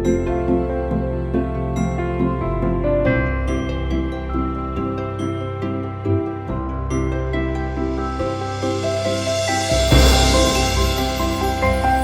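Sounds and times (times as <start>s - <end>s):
background music: 0.0s - 12.0s
low hit: 8.1s - 12.0s.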